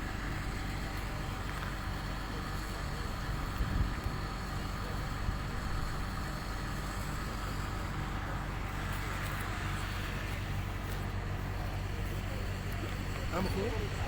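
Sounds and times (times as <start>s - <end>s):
vehicle engine running: 0.0s - 14.0s.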